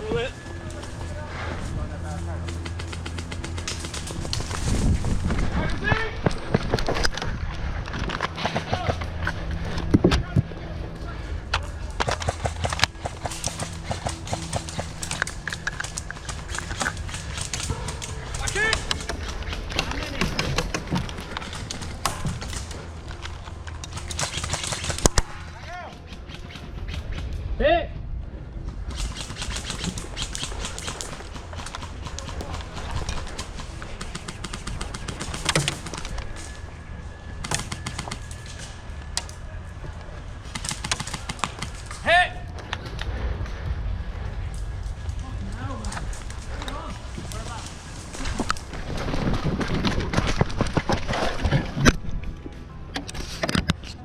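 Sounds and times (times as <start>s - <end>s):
low microphone rumble: 0.0s - 24.2s, 42.4s - 52.7s
airsoft guns firing: 12.0s - 22.8s, 23.8s - 25.4s, 28.9s - 36.4s, 37.4s - 38.8s, 40.4s - 42.0s.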